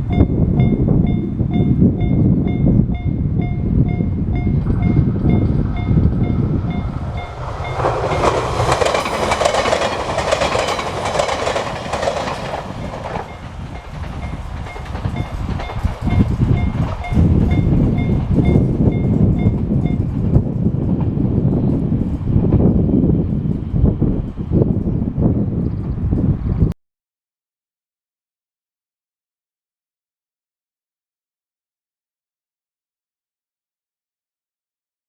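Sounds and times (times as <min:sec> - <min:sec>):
wind rumble on microphone: 0:00.0 - 0:26.8
train wheels clattering over rails: 0:04.6 - 0:24.9.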